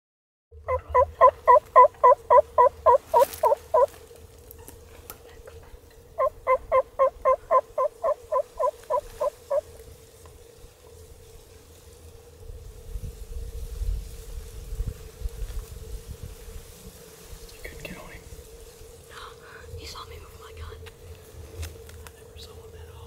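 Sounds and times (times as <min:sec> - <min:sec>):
turkey yelps: 0:00.7 - 0:03.9, 0:06.2 - 0:09.6.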